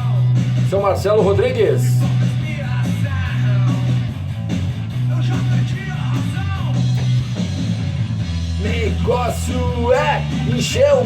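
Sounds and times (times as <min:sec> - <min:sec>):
bass line: 0:00.0 - 0:11.0
rock music with guitars: 0:00.0 - 0:11.0.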